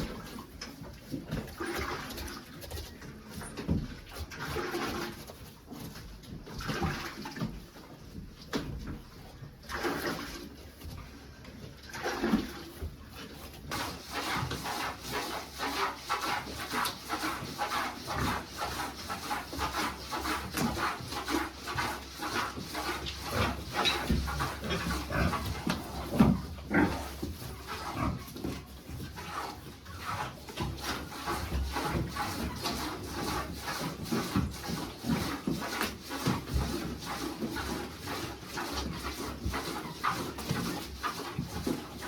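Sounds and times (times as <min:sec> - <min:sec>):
farm animal noises: 0:09.8 - 0:42.0.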